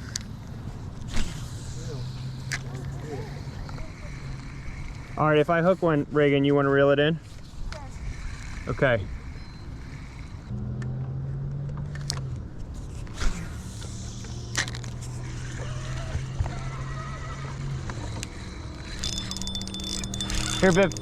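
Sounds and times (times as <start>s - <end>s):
faint clicks and knocks: 19.0s - 21.0s.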